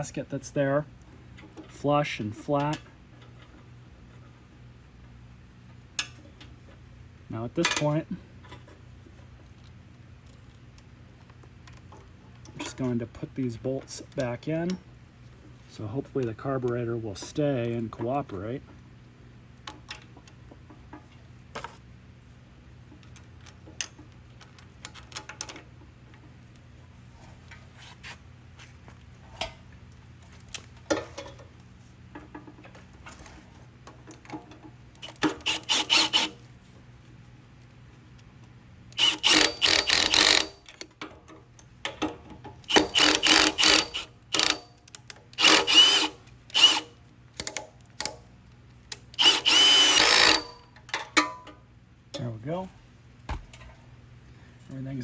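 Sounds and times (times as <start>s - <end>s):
wrench rapid clicking: 35.0s - 36.3s, 39.0s - 40.6s, 42.7s - 44.6s, 45.4s - 47.5s, 49.2s - 50.6s.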